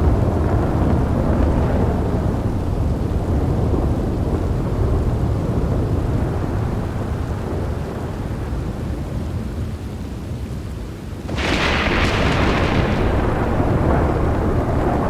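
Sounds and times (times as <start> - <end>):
sharp thunder crack: 0.0 - 7.2, 11.3 - 15.0
rolling thunder rumble: 0.0 - 9.8, 11.3 - 15.0
rain: 0.0 - 15.0.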